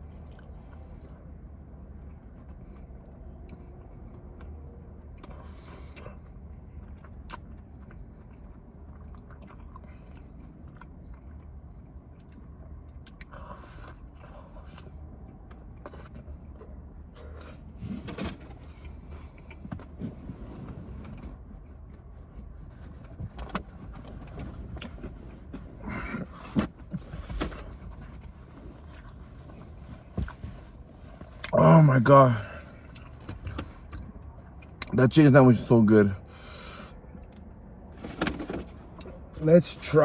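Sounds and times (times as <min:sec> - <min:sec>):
close chewing and biting: 0:00.0 - 0:17.6.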